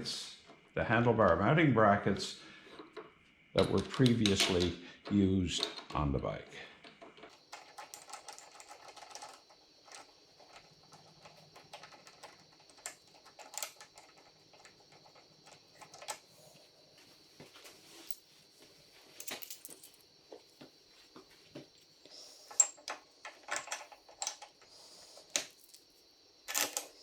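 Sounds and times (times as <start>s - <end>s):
light clicks of metal parts: 2.8s - 6.1s, 6.8s - 16.3s, 21.8s - 25.9s.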